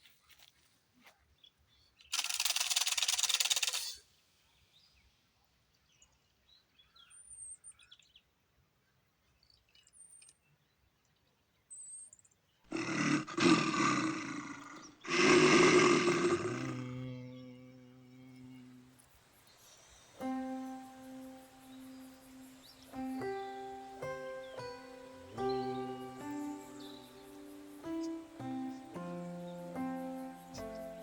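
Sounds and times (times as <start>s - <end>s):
long rough roars: 12.7s - 18.9s
faint high chirps: 16.0s - 31.0s
dry rattling hiss: 18.9s - 31.0s.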